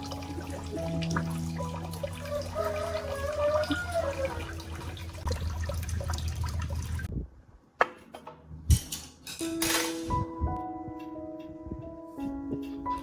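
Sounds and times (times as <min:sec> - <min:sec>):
running water: 0:00.0 - 0:07.1.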